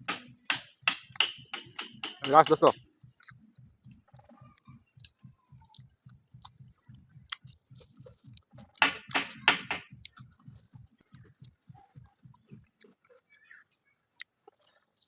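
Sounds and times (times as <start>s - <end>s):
soft chewing: 2.9s - 8.8s, 9.9s - 15.0s.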